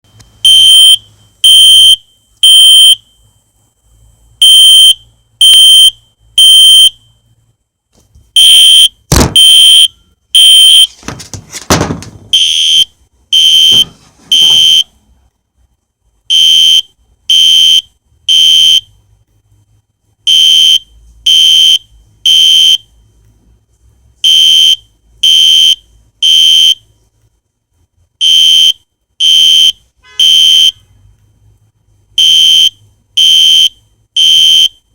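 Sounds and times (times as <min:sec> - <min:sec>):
fire alarm beeping: 0:00.4 - 0:03.0, 0:04.4 - 0:07.0, 0:08.4 - 0:10.9, 0:12.3 - 0:14.9
rustling and knocking: 0:09.1 - 0:09.5, 0:10.8 - 0:12.4, 0:13.7 - 0:14.7
sharp knock: 0:09.1 - 0:09.5, 0:11.0 - 0:12.4.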